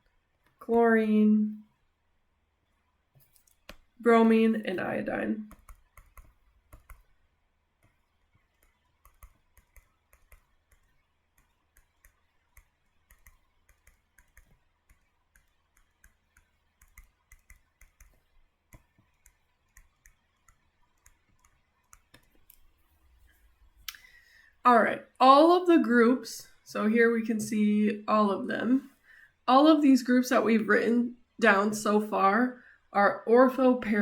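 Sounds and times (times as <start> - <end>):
stylus tapping on tablet screen: 3.5 - 3.9, 5.5 - 7.2, 7.8 - 22.8.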